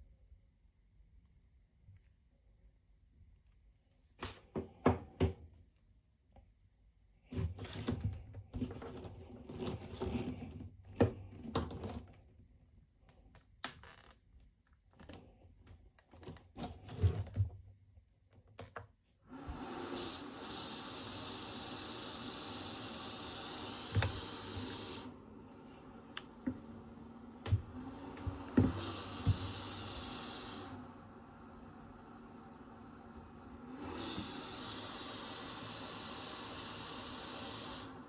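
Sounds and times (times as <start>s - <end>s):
blower rushing air with whine: 19.9s - 38.0s.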